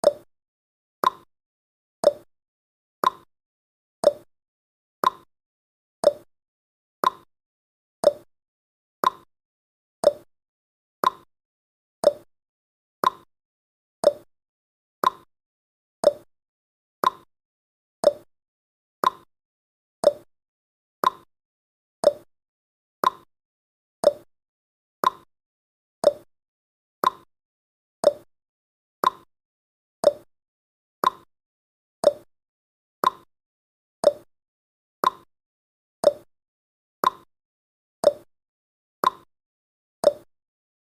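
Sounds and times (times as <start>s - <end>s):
timer ticking: 0.0s - 0.3s, 1.0s - 1.3s, 2.0s - 2.3s, 3.0s - 3.3s, 4.0s - 4.3s, 5.0s - 5.3s, 6.0s - 6.3s, 7.0s - 7.3s, 8.0s - 8.3s, 9.0s - 9.3s, 10.0s - 10.3s, 11.0s - 11.3s, 12.0s - 12.3s, 13.0s - 13.3s, 14.0s - 14.3s, 15.0s - 15.3s, 16.0s - 16.3s, 17.0s - 17.3s, 18.0s - 18.3s, 19.0s - 19.3s, 20.0s - 20.3s, 21.0s - 21.3s, 22.0s - 22.3s, 23.0s - 23.3s, 24.0s - 24.3s, 26.0s - 26.3s, 27.0s - 27.3s, 28.0s - 28.3s, 29.0s - 29.3s, 30.0s - 30.3s, 31.0s - 31.3s, 32.0s - 32.3s, 33.0s - 33.3s, 34.0s - 34.3s, 35.0s - 35.3s, 36.0s - 36.3s, 37.0s - 37.3s, 38.0s - 38.3s, 39.0s - 39.3s, 40.0s - 40.3s.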